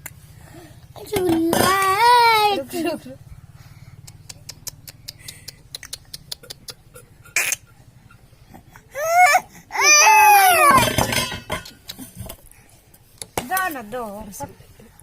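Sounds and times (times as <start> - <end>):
baby crying: 8.9 - 11.1.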